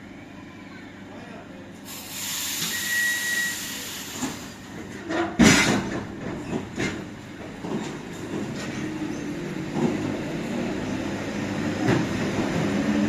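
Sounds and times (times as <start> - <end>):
hiss: 1.9 - 4.5
train rumble and wheel knocks: 4.0 - 13.0
loud clunk: 5.2 - 7.0.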